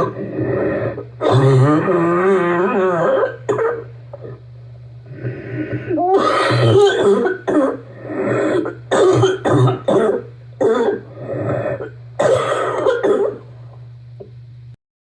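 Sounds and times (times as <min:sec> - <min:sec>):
person deep barking cough: 0:03.0 - 0:03.8, 0:06.1 - 0:07.8, 0:08.4 - 0:11.1, 0:11.7 - 0:13.4.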